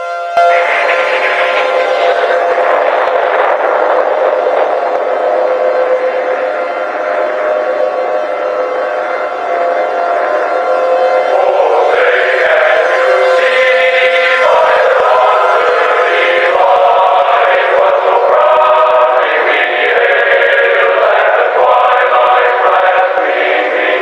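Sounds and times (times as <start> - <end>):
choir singing an anthem: 0.4 - 24.0.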